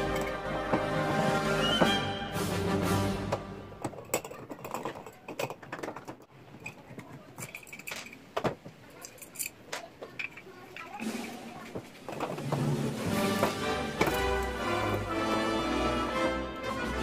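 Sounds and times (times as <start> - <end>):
small parts and tools clicking: 3.8 - 12.4.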